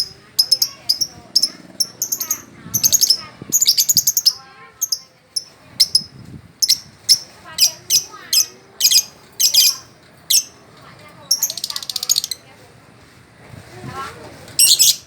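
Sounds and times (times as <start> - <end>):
songbird chirping: 0.0 - 10.6, 11.2 - 12.4.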